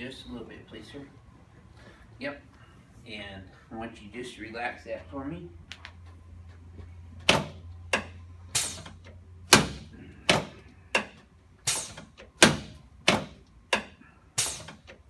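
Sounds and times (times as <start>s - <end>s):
sharp knocks of chiropractic adjustment: 7.3s - 15.0s.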